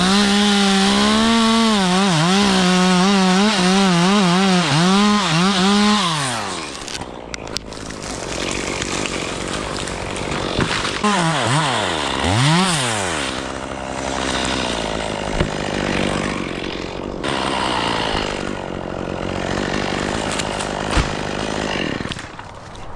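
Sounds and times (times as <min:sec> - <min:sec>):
chainsaw revving and cutting: 0:00.0 - 0:07.1, 0:07.7 - 0:22.4
sharp knocks: 0:15.3 - 0:15.6.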